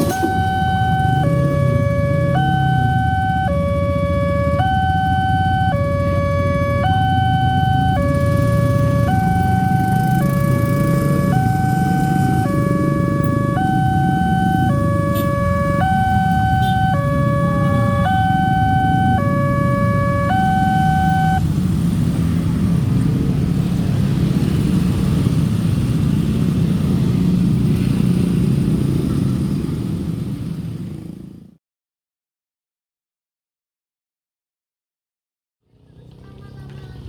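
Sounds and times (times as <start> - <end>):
level crossing two-tone alarm: 0.0 - 21.4.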